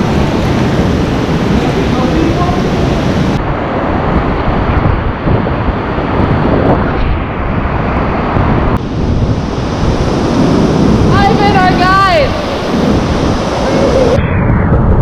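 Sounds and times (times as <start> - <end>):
waterfall rushing: 0.0 - 3.8, 8.8 - 14.2
wind buffeting microphone: 0.0 - 15.0.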